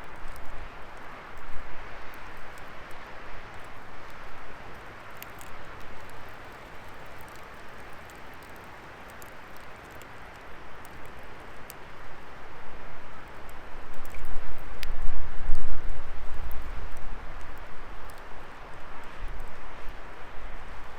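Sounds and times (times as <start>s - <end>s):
wood fire crackling: 0.1s - 12.6s.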